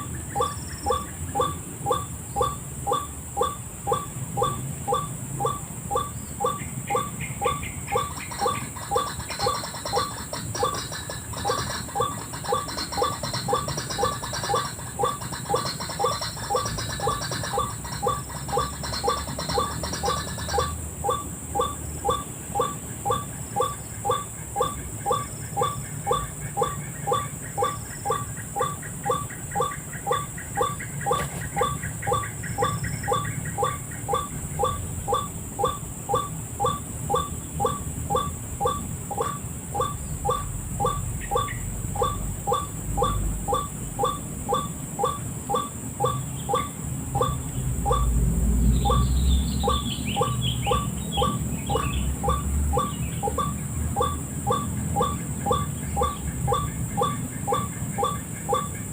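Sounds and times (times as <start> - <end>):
higher falling bird chirps: 0.0 - 58.9
waterhen calls: 0.0 - 58.9.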